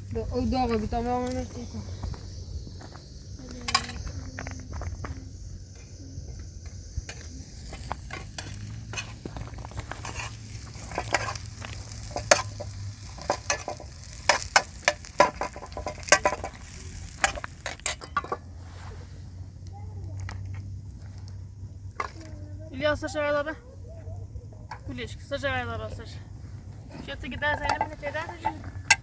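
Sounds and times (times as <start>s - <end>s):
objects clicking and scraping: 3.4s - 18.5s, 20.0s - 22.5s, 26.6s - 29.0s.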